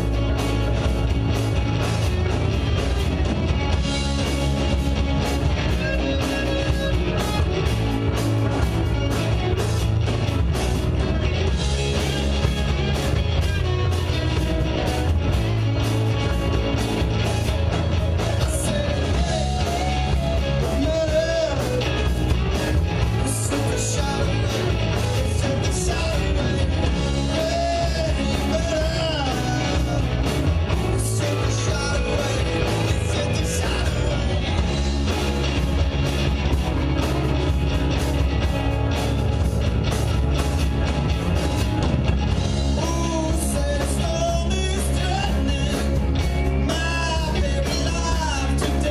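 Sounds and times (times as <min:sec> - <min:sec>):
drum kit beat: 0:00.0 - 0:48.9
electric guitar: 0:00.0 - 0:48.9
person singing: 0:18.0 - 0:34.6, 0:42.7 - 0:48.9.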